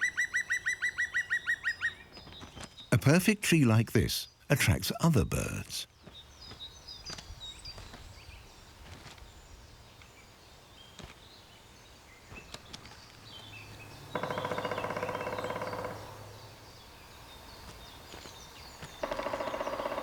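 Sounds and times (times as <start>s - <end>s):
songbird chirps: 0.0s - 20.0s
woodpecker drumming on wood: 14.2s - 16.2s, 19.0s - 20.0s.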